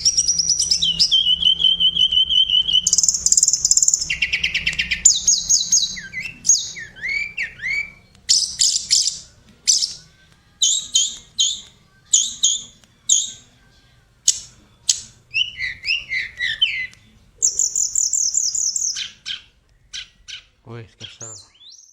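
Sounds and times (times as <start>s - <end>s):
songbird singing: 0.0s - 21.9s.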